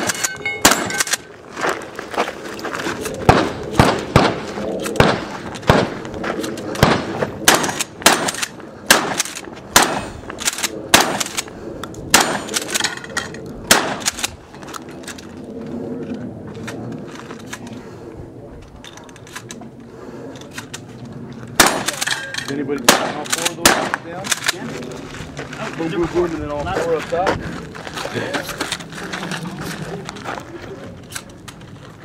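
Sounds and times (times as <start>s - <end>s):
shotgun shots: 0.0s - 1.2s, 3.2s - 6.0s, 6.8s - 11.5s, 12.1s - 12.6s, 13.7s - 14.2s, 21.6s - 22.1s, 22.8s - 24.2s.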